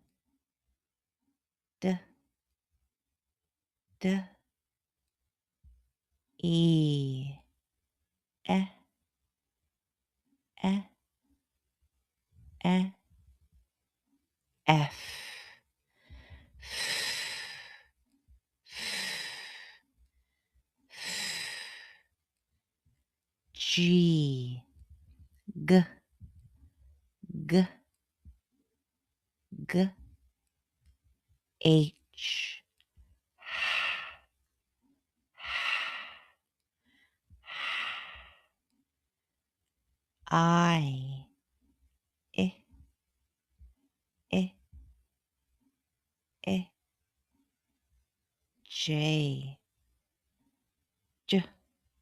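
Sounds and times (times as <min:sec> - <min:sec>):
person making hissing f sound: 0:33.4 - 0:34.2, 0:35.4 - 0:36.3, 0:37.5 - 0:38.4
breathy h exhale: 0:33.4 - 0:34.3, 0:35.4 - 0:36.4, 0:37.4 - 0:38.5.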